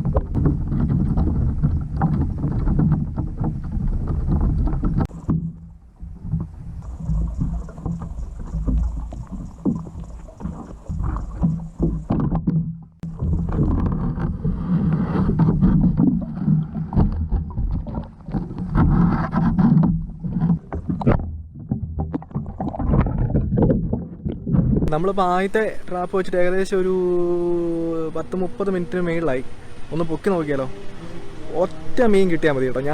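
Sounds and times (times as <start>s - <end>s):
underwater low rumble: 0.0s - 32.9s
faint high hiss: 24.9s - 32.9s.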